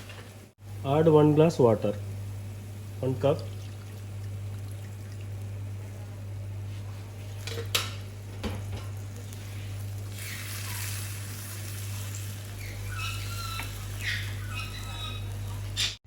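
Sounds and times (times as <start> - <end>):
steady low hum: 0.0 - 10.2
gravy sizzling in a pan: 7.9 - 15.8.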